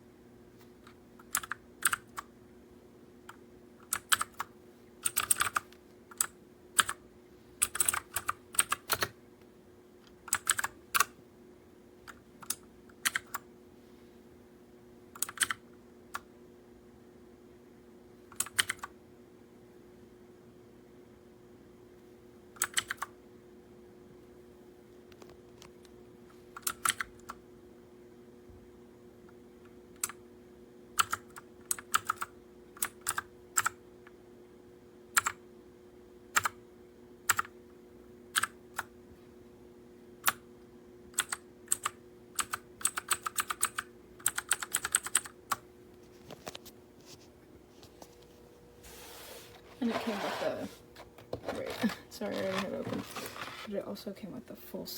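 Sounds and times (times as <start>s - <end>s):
faint steady hum: 0.0s - 54.9s
mechanical keyboard clicking: 1.2s - 2.3s, 3.3s - 7.0s, 7.6s - 9.1s, 10.3s - 11.1s, 12.1s - 13.4s, 15.2s - 15.6s, 18.3s - 18.9s, 22.6s - 23.1s, 26.6s - 27.3s, 31.0s - 33.8s, 35.2s - 35.4s, 37.3s - 37.5s, 38.4s - 38.9s, 41.2s - 45.6s.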